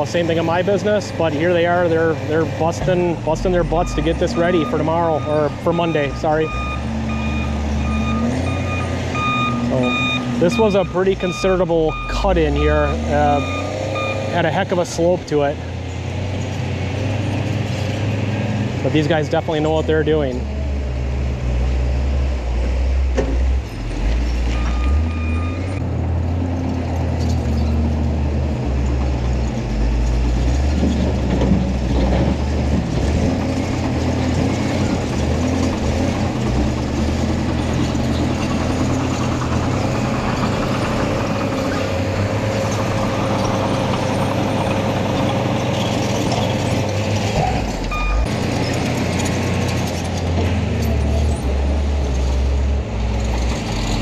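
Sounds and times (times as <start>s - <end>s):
heavy machinery engine rumble: 0.0s - 54.0s.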